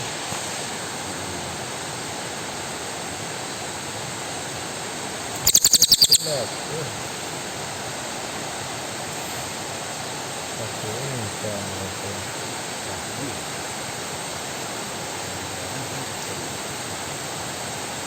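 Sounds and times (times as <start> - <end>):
steady rushing hiss: 0.0 - 18.0
faint low voices: 1.0 - 1.8, 10.6 - 13.6, 15.0 - 17.2.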